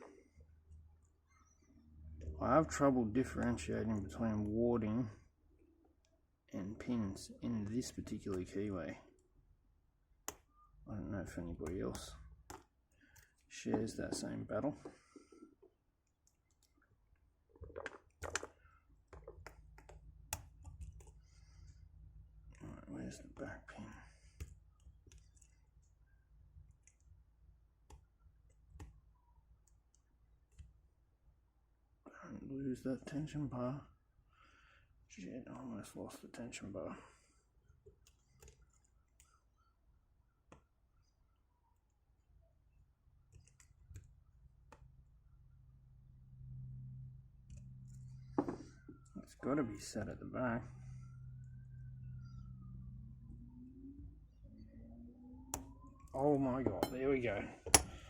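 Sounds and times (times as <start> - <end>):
lock pick clicking and scraping: 57.7 - 58.0.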